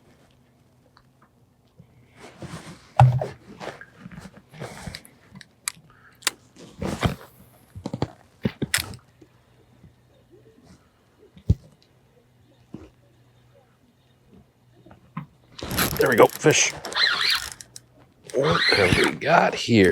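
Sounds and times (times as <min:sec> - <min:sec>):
thunk: 0:03.0 - 0:03.3
knocks and clicks of tackle: 0:03.0 - 0:05.0, 0:15.2 - 0:17.8.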